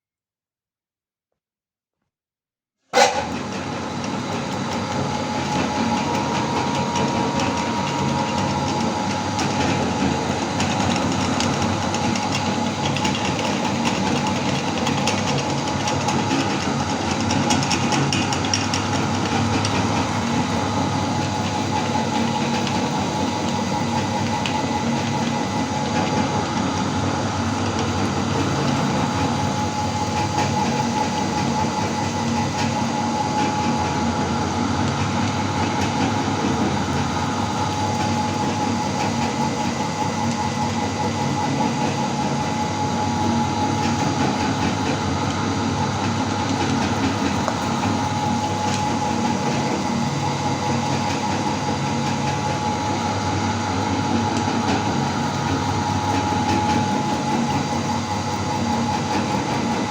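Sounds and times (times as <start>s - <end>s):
meat grinder motor whining: 3.0s - 59.9s.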